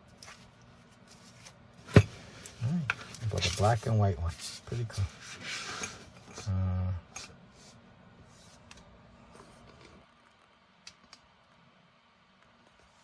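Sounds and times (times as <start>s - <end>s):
faint clicks and handling noises: 8.5s - 11.7s.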